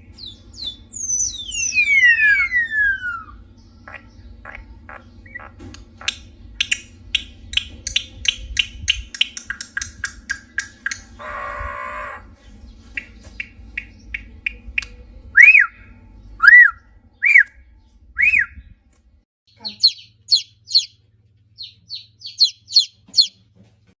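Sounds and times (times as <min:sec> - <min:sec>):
rapid high bird chirps: 0:00.1 - 0:17.6, 0:18.2 - 0:18.7, 0:19.5 - 0:23.4
loud whistled bird notes: 0:00.6 - 0:03.5, 0:11.2 - 0:14.3, 0:15.3 - 0:17.6, 0:18.2 - 0:18.7
bird ticking calls: 0:01.5 - 0:12.2, 0:12.8 - 0:15.7, 0:19.5 - 0:21.0, 0:21.6 - 0:23.4.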